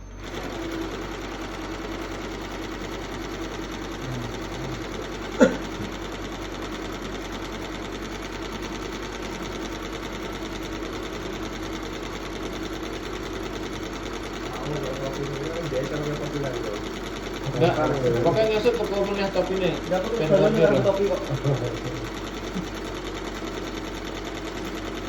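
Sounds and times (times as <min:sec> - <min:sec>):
embroidery machine needle clatter: 0:00.2 - 0:25.0.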